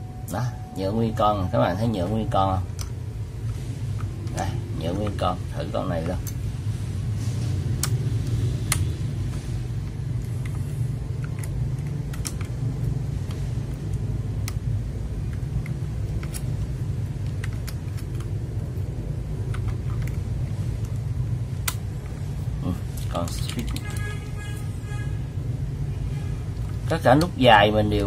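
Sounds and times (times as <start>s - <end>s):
steady low hum: 0.0s - 28.0s
mechanical keyboard key clicks: 10.3s - 12.6s.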